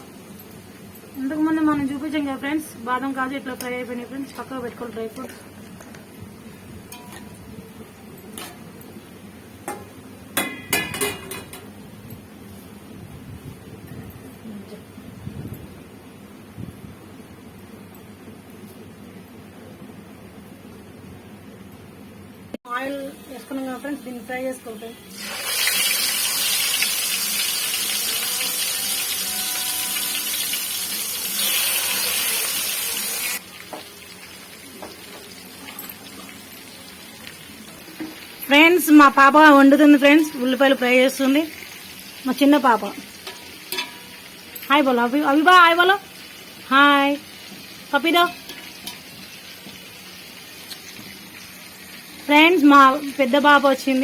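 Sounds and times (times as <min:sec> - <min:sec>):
metal utensil clinking cookware: 0:06.9 - 0:07.4, 0:09.7 - 0:11.7, 0:34.8 - 0:41.4, 0:43.1 - 0:45.0, 0:48.2 - 0:49.2
food frying in hot oil: 0:22.7 - 0:54.0.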